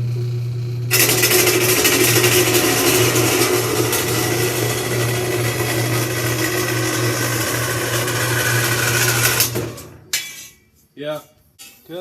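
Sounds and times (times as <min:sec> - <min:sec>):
power tool cutting metal sheet: 0:00.9 - 0:10.0.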